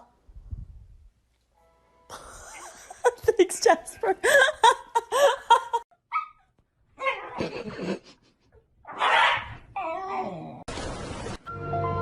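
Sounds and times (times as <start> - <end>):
dog barking: 8.9 - 9.6.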